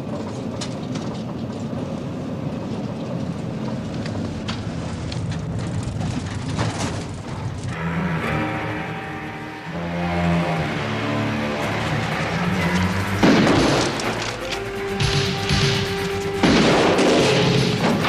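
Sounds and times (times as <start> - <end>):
vehicle rumbling: 0.0 - 18.0
music: 7.7 - 18.0.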